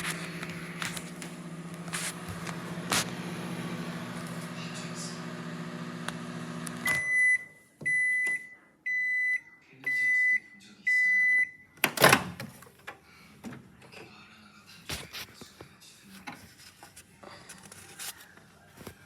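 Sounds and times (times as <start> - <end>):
microwave oven hum: 0.0 - 7.4
microwave beeps: 5.4 - 11.8.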